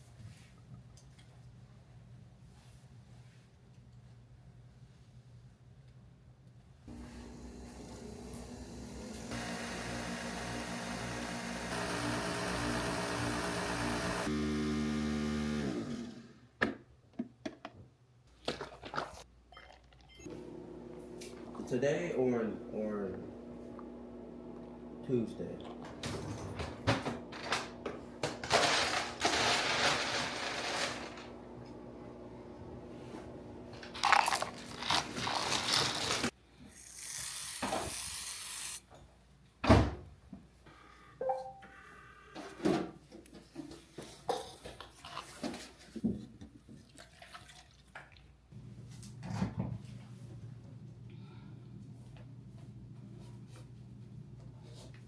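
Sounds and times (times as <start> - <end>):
coffee machine humming: 6.9 - 16.3, 20.3 - 36.3, 48.6 - 49.3.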